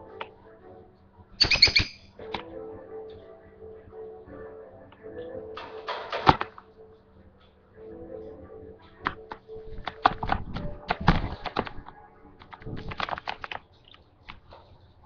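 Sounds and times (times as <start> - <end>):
bird chirping and clicking: 1.4 - 2.2, 13.2 - 14.1.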